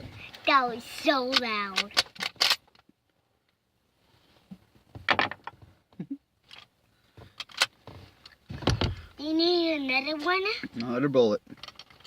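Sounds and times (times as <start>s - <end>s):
handling clicks and rattles: 10.8s - 12.0s.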